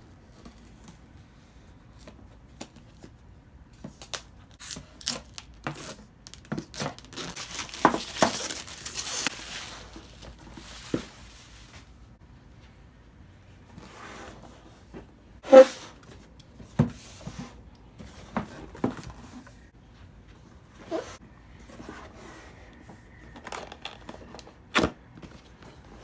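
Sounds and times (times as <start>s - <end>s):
packaging tearing and crinkling: 4.0s - 10.4s.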